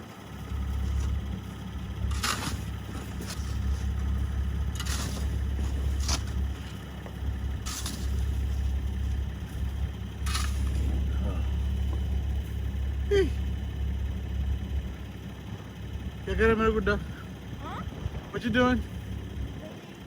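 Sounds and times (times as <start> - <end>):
low rumble: 0.0 - 19.7
snow scraping: 0.4 - 15.4.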